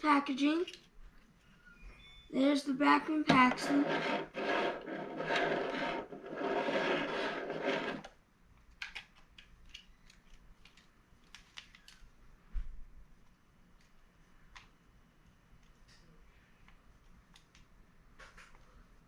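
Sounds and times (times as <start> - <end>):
faint clicks and taps: 8.6 - 18.7.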